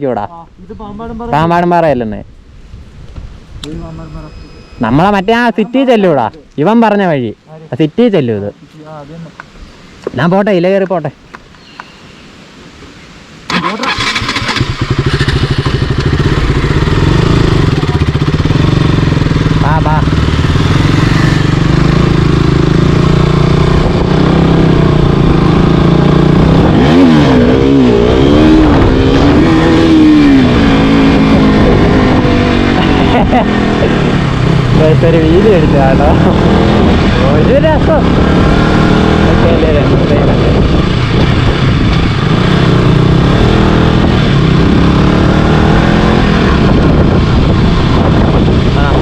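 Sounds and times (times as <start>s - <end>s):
motorcycle engine revving: 13.5s - 49.0s.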